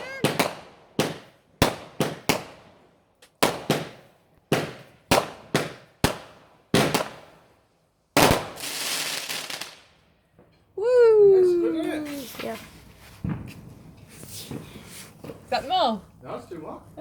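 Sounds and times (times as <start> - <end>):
fireworks bangs: 0.0 - 7.5, 8.2 - 10.6, 12.0 - 15.9.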